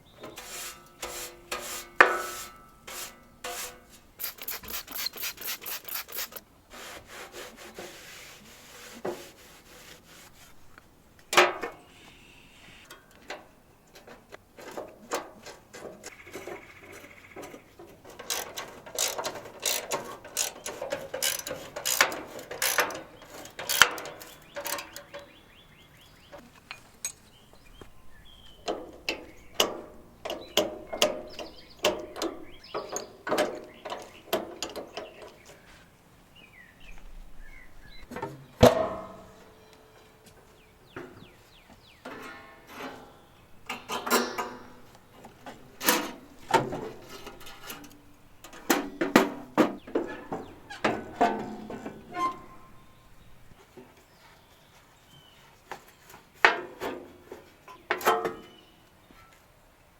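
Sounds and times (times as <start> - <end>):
scraping: 0.2 - 10.8, 42.1 - 53.6
ratchet clicking: 4.2 - 6.4, 18.2 - 23.0.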